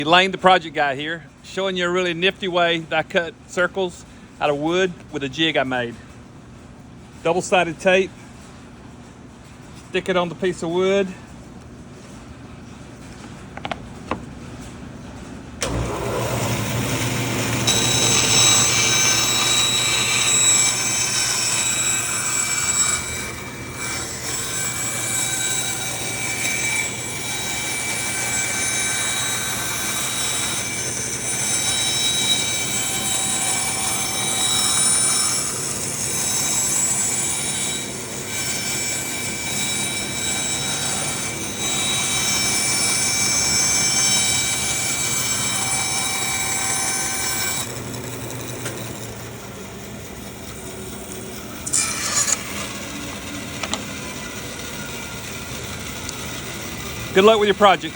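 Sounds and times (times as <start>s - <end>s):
bandsaw cutting wood: 15.6s - 57.9s.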